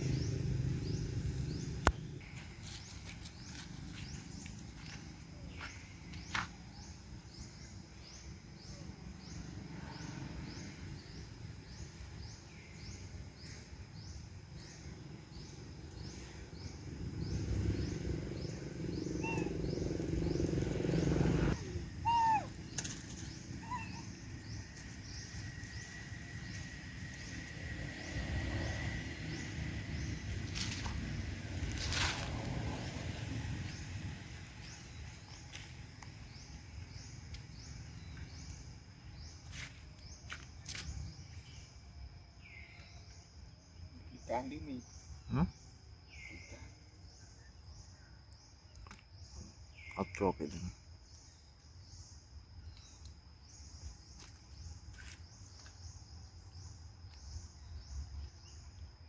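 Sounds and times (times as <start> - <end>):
high animal chirps: 19.1 - 20.1, 21.6 - 24.2
short squeaking calls: 19.2 - 19.6, 21.6 - 24.2.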